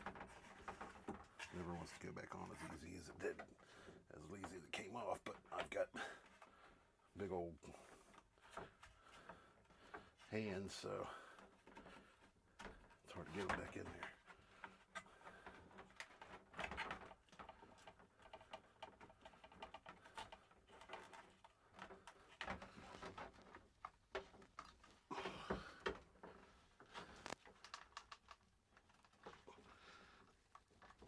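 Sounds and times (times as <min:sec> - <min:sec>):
plastic parts clicking and rustling: 0:11.3 - 0:31.0.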